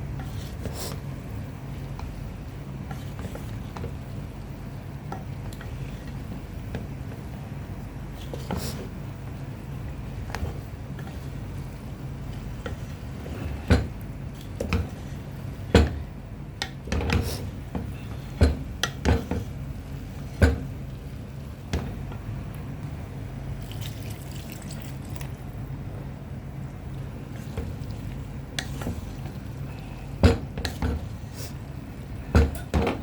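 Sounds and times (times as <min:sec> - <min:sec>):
steady low hum: 0:00.0 - 0:33.0
liquid sounds: 0:23.6 - 0:25.6, 0:26.6 - 0:30.1.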